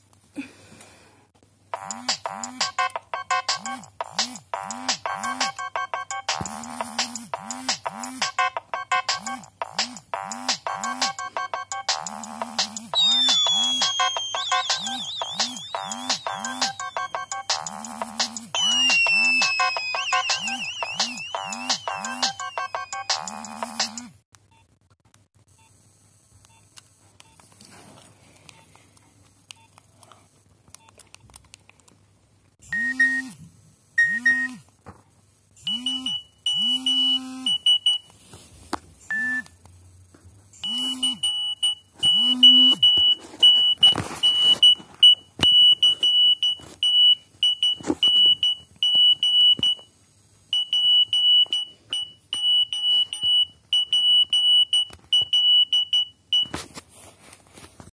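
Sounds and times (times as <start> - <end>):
mobile phone beeping alert: 10.2 - 23.7, 40.6 - 49.8.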